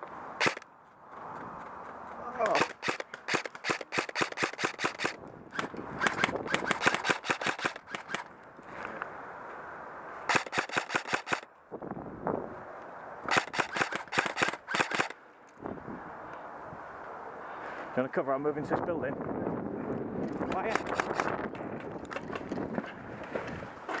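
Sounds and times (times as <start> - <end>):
airsoft rifle firing: 0.4 - 0.6, 2.4 - 8.3, 10.3 - 11.5, 13.3 - 15.2.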